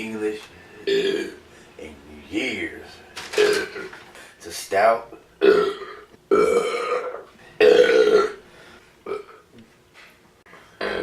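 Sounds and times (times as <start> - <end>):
man belching loudly: 0.8 - 1.4, 5.4 - 8.4, 10.8 - 11.0.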